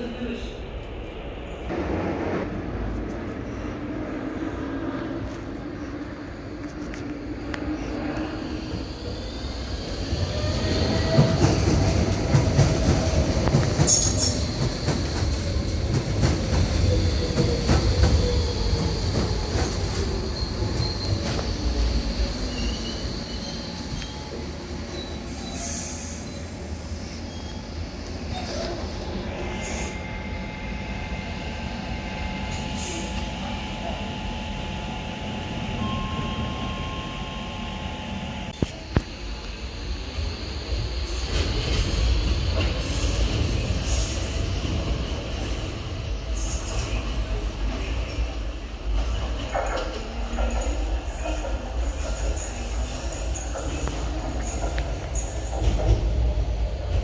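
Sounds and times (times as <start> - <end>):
train rumbling: 0.0 - 57.0.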